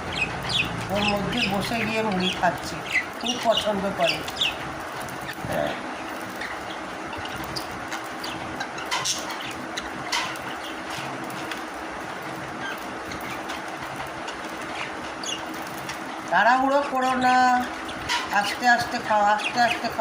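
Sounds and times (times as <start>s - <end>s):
bird chirps: 0.0s - 4.6s, 14.3s - 15.6s
birds pecking clicks: 0.0s - 20.0s
steady background hum: 0.0s - 20.0s.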